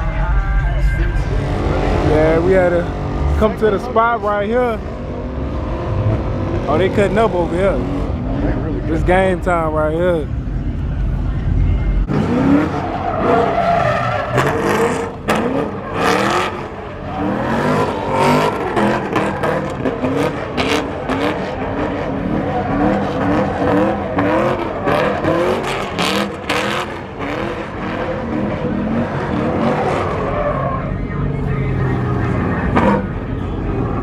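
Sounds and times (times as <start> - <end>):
car engine revving: 0.0 - 34.0
tires squealing on pavement: 12.1 - 31.1, 31.7 - 34.0.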